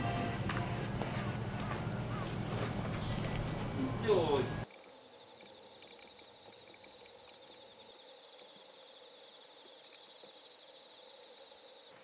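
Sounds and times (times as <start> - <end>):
rapid repeated chirping: 0.0 - 4.6
high insect drone: 0.0 - 11.9.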